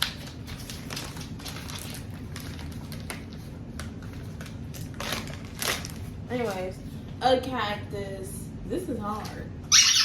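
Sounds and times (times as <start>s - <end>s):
packaging crinkling and tapping: 0.0s - 6.2s.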